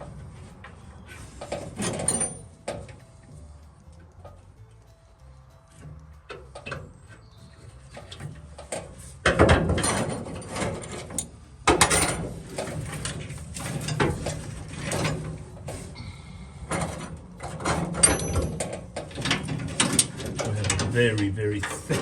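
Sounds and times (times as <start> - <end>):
hand tools clicking and clattering: 0.0 - 3.3, 5.7 - 22.0.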